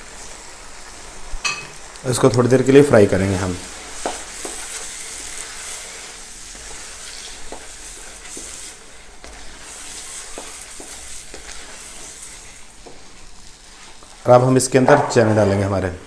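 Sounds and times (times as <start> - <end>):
food sizzling in a pan: 0.0 - 16.0
spoon knocking against pan: 1.4 - 1.8.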